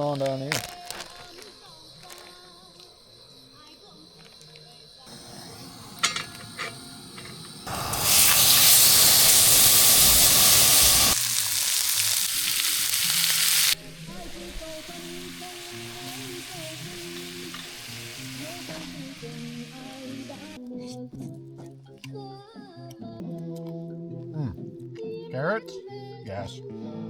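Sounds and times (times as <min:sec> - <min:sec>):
steak sizzling in a pan: 0:05.1 - 0:20.6
background music: 0:10.8 - 0:27.0.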